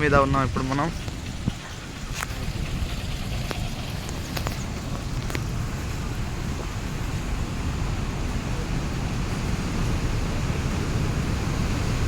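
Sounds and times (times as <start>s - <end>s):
water pouring through dam gate: 0.0s - 12.0s
wind buffeting microphone: 0.0s - 12.0s.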